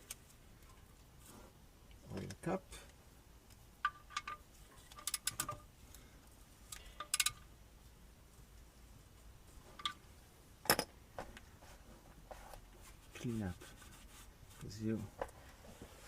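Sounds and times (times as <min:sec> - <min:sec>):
metal parts clicking and clinking: 0:03.8 - 0:05.7, 0:06.7 - 0:07.5.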